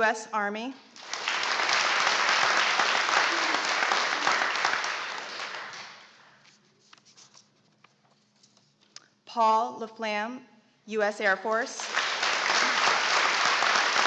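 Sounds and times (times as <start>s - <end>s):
crowd applauding: 1.0s - 6.2s, 11.8s - 14.0s.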